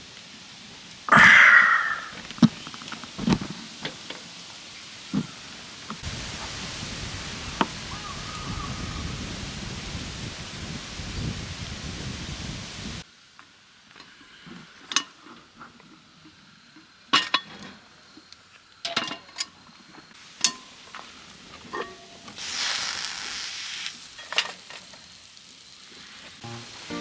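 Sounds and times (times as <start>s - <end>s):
outdoor rustling: 0.0s - 27.0s
food sizzling: 1.7s - 13.1s, 20.2s - 27.0s.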